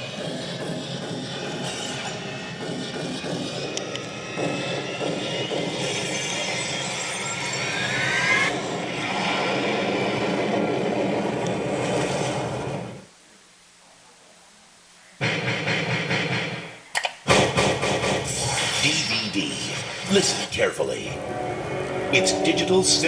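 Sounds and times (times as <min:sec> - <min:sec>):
rumbling jet-like roar: 0:15.2 - 0:23.0
rising whistle: 0:21.1 - 0:23.0.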